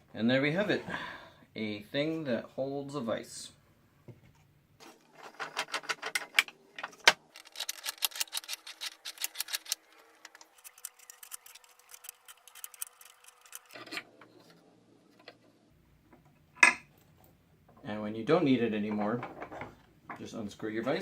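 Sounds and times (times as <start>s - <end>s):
rapid mechanical clicking: 7.3s - 13.8s.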